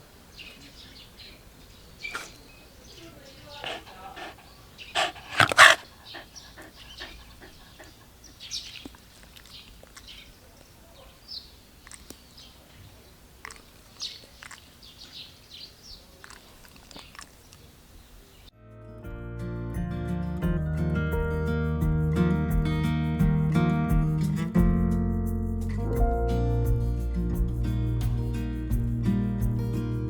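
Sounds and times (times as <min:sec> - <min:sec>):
dog barking: 0:03.4 - 0:08.1.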